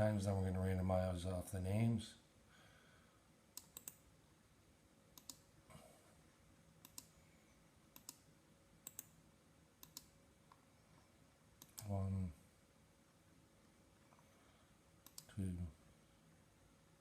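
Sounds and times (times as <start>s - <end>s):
computer mouse clicking: 3.5s - 4.0s, 5.2s - 5.5s, 6.8s - 7.2s, 7.9s - 9.2s, 9.8s - 10.6s, 11.6s - 11.9s, 15.0s - 15.4s.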